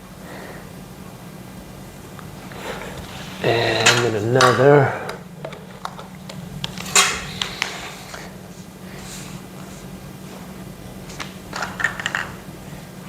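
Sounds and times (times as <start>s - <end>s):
steady low hum: 0.0s - 11.5s
metal tubes clinking and knocking: 2.9s - 8.3s.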